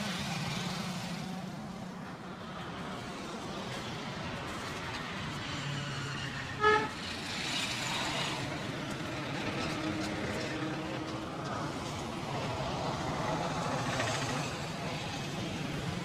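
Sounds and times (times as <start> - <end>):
street traffic: 0.0 - 16.0
vehicle horn beep: 6.6 - 7.0.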